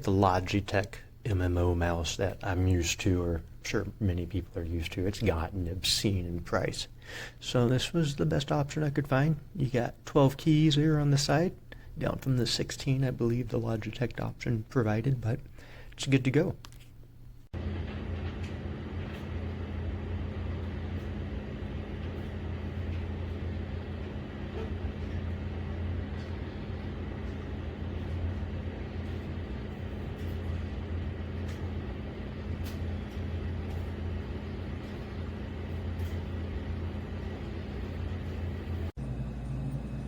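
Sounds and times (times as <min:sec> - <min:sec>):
hazy static noise: 0:00.0 - 0:39.0
low hum and rumble: 0:17.0 - 0:40.0.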